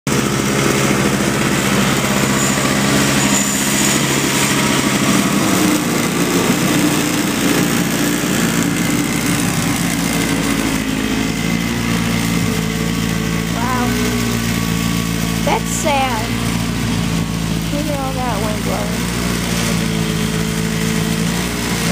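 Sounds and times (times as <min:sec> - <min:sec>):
engine running: 0:00.1 - 0:21.9.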